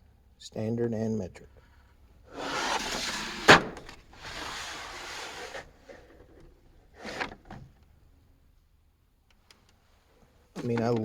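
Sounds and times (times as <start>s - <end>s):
plastic case rubbing and sliding: 2.3s - 7.6s.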